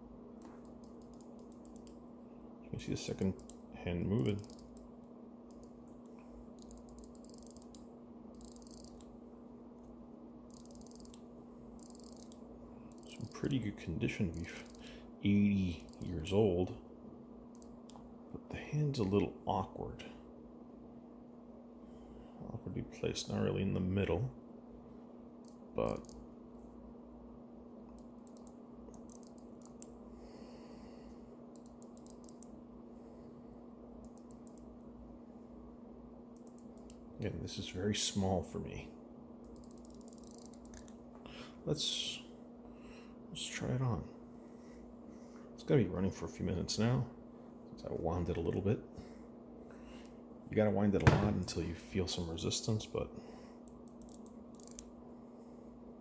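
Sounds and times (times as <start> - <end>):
steady low hum: 0.0 - 56.0
watch crown ratchet clicking: 4.2 - 4.8, 6.6 - 7.8, 8.4 - 9.1, 10.5 - 11.2, 11.8 - 13.4, 14.3 - 14.9, 31.6 - 32.5, 39.5 - 40.9, 54.0 - 54.8.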